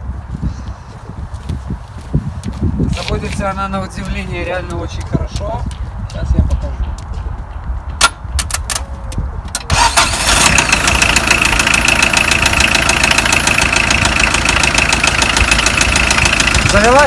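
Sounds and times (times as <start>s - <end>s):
diesel engine cranking and starting: 9.5s - 17.0s
engine idling with knocking: 9.7s - 17.0s.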